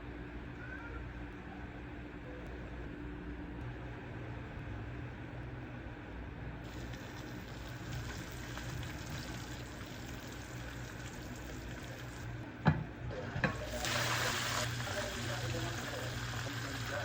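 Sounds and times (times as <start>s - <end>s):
food sizzling in a frying pan: 6.7s - 12.4s, 13.2s - 17.0s.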